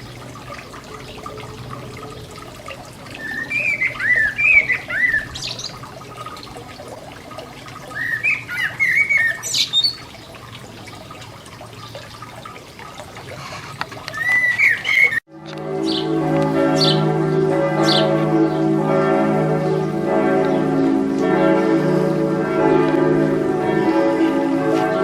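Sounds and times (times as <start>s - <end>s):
garden fountain splashing: 0.0s - 25.0s
songbird warbling: 3.1s - 6.5s, 7.8s - 10.4s, 13.4s - 16.2s, 16.8s - 17.1s, 17.8s - 18.7s.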